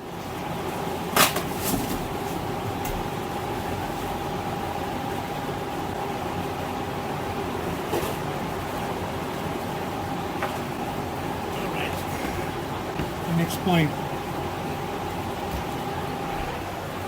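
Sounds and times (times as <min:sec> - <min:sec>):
electric fan whooshing: 0:00.4 - 0:17.0
faint hum: 0:09.8 - 0:17.0.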